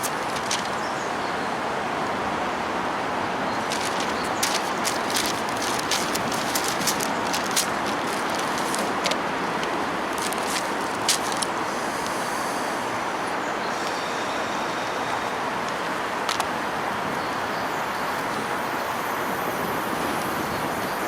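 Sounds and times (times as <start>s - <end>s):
sharp clicks: 3.7s - 12.2s.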